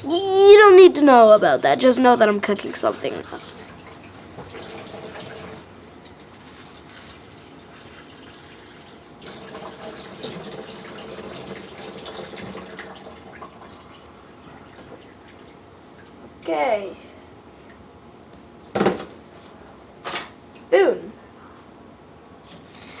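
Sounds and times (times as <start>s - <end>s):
tap water running into container: 1.3s - 16.2s.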